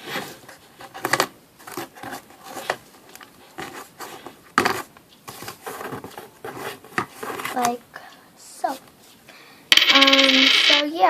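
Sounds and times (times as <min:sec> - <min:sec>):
coins fed into slot: 0:09.7 - 0:11.0.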